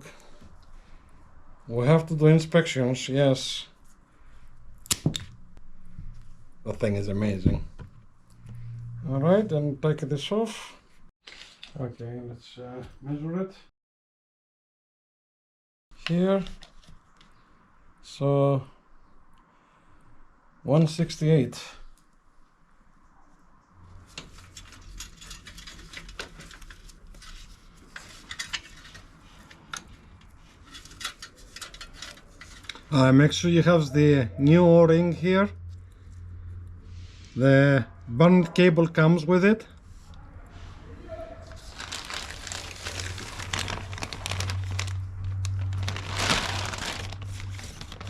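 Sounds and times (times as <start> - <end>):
steady low hum: 0.4 - 10.0
metal parts clinking: 30.6 - 33.0
plastic packaging crinkling: 41.5 - 48.0.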